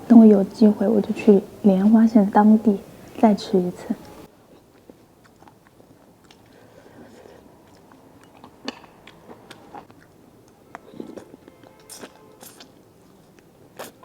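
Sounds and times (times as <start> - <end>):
person chewing food: 4.0 - 14.0.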